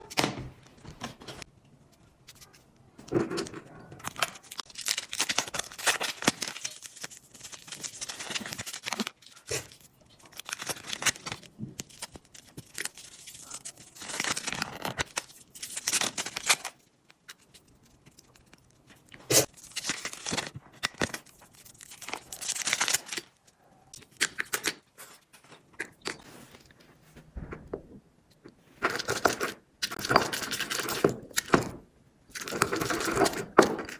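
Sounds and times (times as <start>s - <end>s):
slime squelching and crackling: 3.3s - 24.6s.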